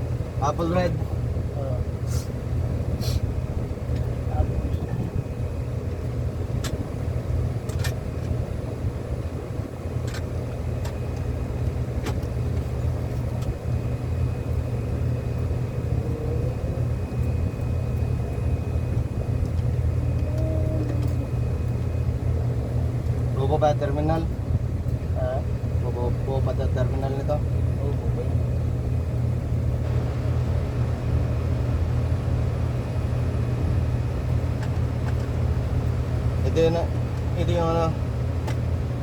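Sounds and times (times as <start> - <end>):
machinery rumbling: 0.0 - 39.0.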